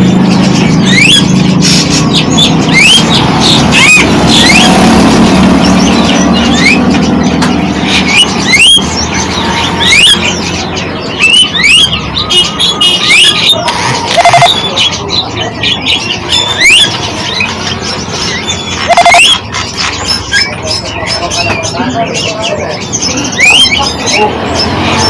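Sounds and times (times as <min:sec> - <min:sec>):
birds chirping: 0:00.0 - 0:25.0
louder lower bird call: 0:11.2 - 0:15.0, 0:18.4 - 0:19.5.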